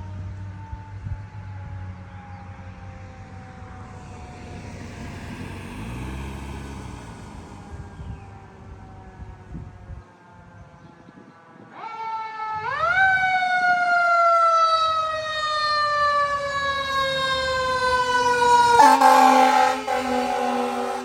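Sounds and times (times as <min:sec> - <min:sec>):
truck engine rumbling: 0:01.3 - 0:10.0, 0:15.5 - 0:21.0
fire engine siren wailing: 0:02.0 - 0:10.0, 0:11.4 - 0:21.0
loud horn blast: 0:03.3 - 0:08.1, 0:18.4 - 0:21.0.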